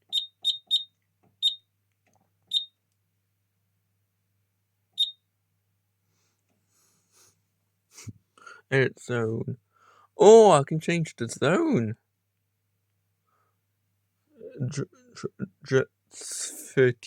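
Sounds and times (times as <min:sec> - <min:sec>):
short high keypad beeps: 0:00.1 - 0:01.6, 0:02.5 - 0:02.7.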